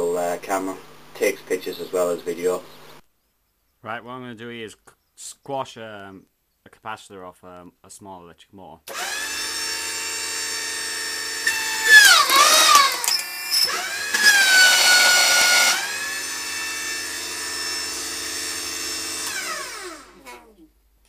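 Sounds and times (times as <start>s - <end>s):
hydraulic pump motor whine: 8.9s - 20.4s.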